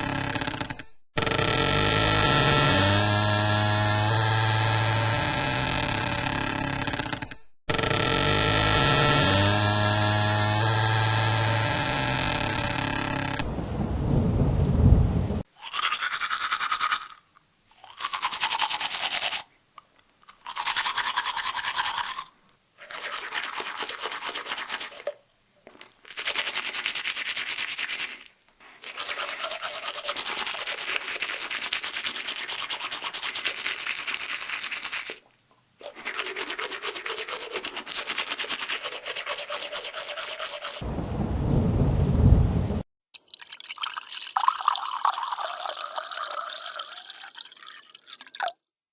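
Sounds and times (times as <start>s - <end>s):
loud low sound: 13.4s - 15.4s, 40.8s - 42.8s
teeth being brushed: 15.6s - 19.5s, 20.2s - 40.8s.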